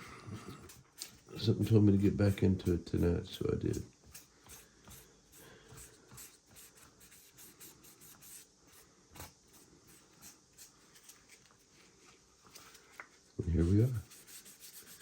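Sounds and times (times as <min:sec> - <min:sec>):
wet sanding sponge scratching paint: 0:00.6 - 0:10.7, 0:13.4 - 0:15.0.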